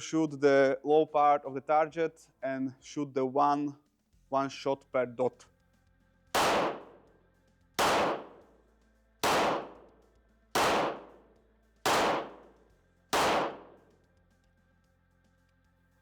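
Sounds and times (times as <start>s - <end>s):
pistol shots echoing indoors: 6.4s - 7.1s, 7.8s - 8.5s, 9.2s - 10.0s, 10.6s - 11.2s, 11.9s - 13.9s.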